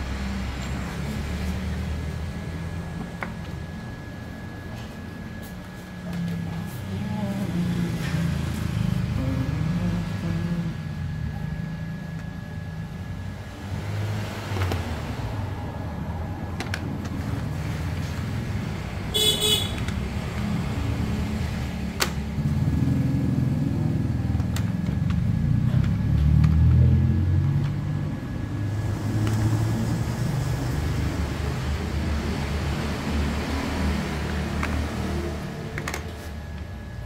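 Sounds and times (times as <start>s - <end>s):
engine rumbling: 0.0s - 37.0s
high horn toot: 19.1s - 19.9s.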